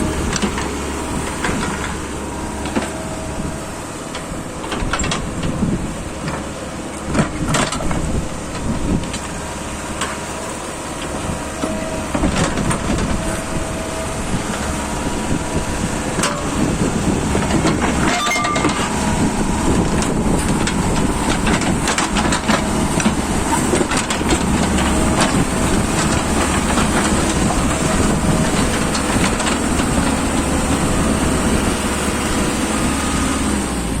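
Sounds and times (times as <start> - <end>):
diesel engine running: 0.0 - 34.0
metal bucket clanks: 18.0 - 19.0.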